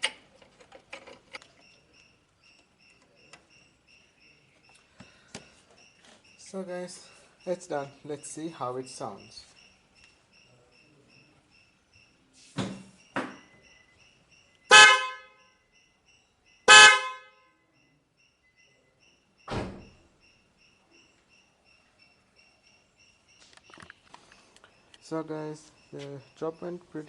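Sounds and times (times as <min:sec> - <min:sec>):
car horn blasts: 0:14.7 - 0:15.4, 0:16.7 - 0:17.5.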